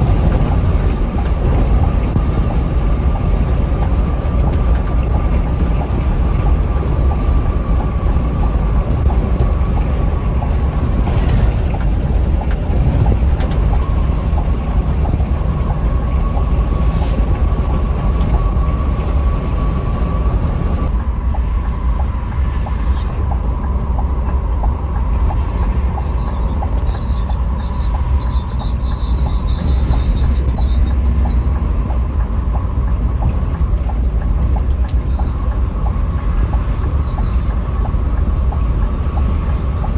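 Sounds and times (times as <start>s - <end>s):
low rumble of engine and road: 0.0s - 39.9s
steady whine: 0.0s - 39.9s.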